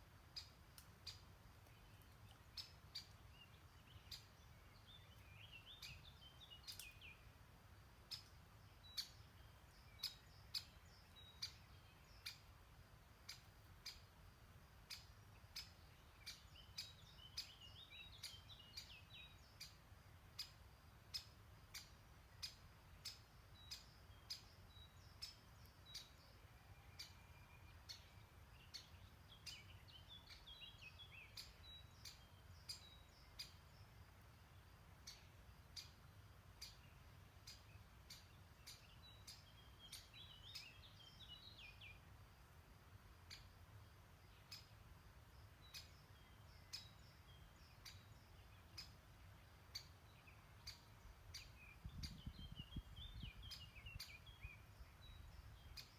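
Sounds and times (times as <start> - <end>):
songbirds twittering: 0.1 - 55.9
faint regular clicking: 0.4 - 3.2, 6.6 - 7.1.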